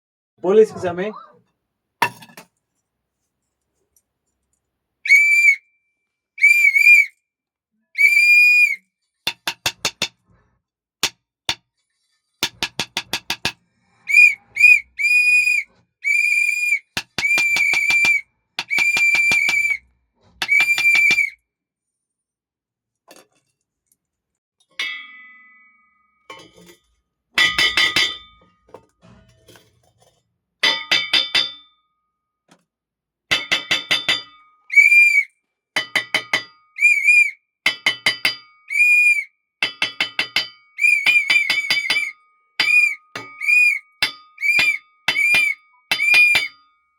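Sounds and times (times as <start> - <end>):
police whistle blasts: 5.1 - 5.6, 6.4 - 7.1, 8.0 - 8.8, 14.1 - 19.8, 20.4 - 21.4, 34.7 - 35.3, 36.8 - 37.4, 38.7 - 39.3, 40.8 - 43.8, 44.4 - 46.5.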